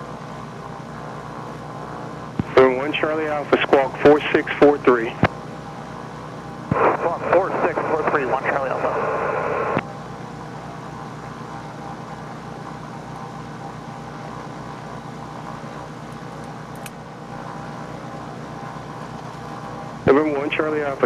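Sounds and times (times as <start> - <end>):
aircraft piston engines idling: 0.3 - 6.0.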